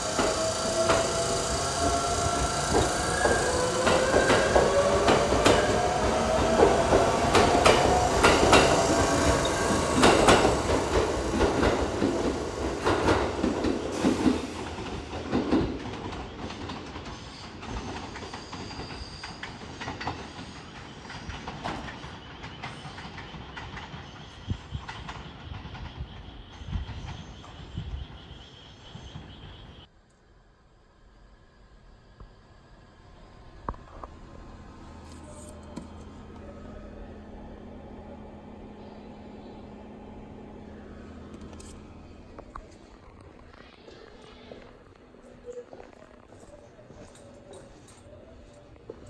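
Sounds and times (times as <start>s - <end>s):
electric train motor whine: 0.0s - 11.5s, 31.0s - 45.3s
wheels clacking over rail joints: 0.0s - 27.7s.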